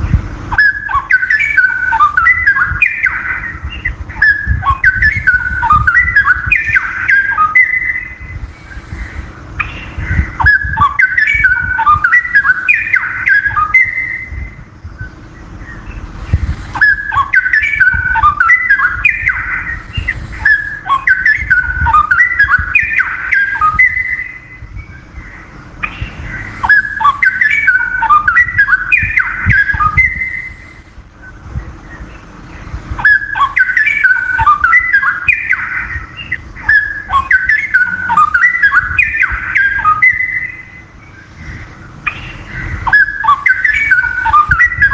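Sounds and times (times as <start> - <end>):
bird singing warbled phrases: 0.0 - 44.9.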